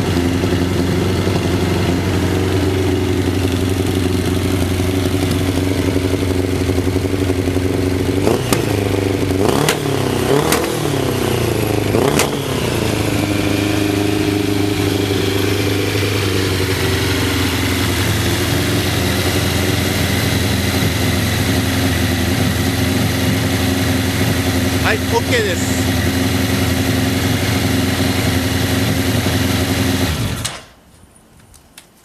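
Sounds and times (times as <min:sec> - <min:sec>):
motorcycle engine idling: 0:00.0 - 0:30.0
engine revving: 0:07.7 - 0:25.2.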